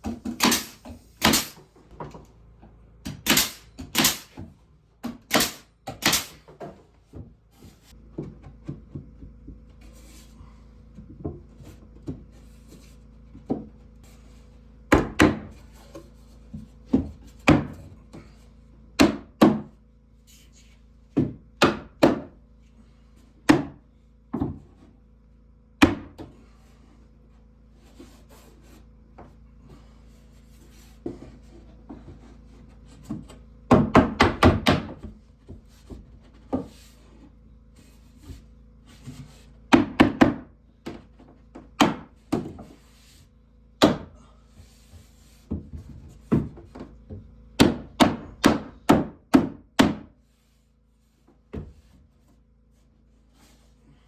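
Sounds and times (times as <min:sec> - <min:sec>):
knocks and thuds on wood: 0:00.0 - 0:02.3, 0:03.0 - 0:09.8, 0:10.9 - 0:12.4, 0:13.3 - 0:13.8, 0:14.9 - 0:18.4, 0:19.0 - 0:19.8, 0:21.1 - 0:22.4, 0:23.4 - 0:24.9, 0:25.8 - 0:26.4, 0:31.0 - 0:36.8, 0:39.0 - 0:42.8, 0:43.8 - 0:50.2, 0:51.2 - 0:52.1
handling and rubbing wood: 0:06.6 - 0:14.7, 0:26.3 - 0:33.6, 0:35.0 - 0:39.7, 0:44.5 - 0:47.4, 0:50.2 - 0:54.0.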